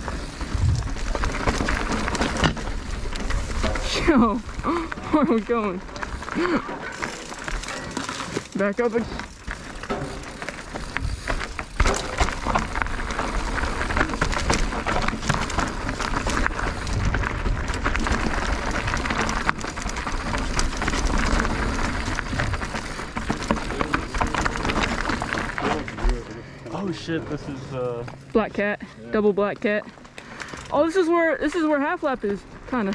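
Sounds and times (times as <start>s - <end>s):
bike rattling and knocking: 0.0s - 28.0s
bike tyres on dirt and rock: 0.0s - 32.9s.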